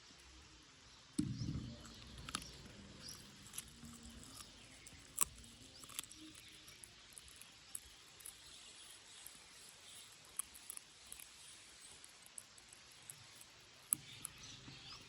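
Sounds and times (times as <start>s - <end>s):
low thump: 1.2s - 2.4s
puppies chewing and licking: 1.6s - 15.0s.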